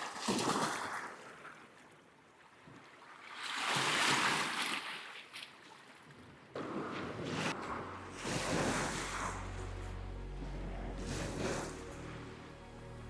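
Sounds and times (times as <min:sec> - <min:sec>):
wave breaking on beach: 0:06.6 - 0:12.6.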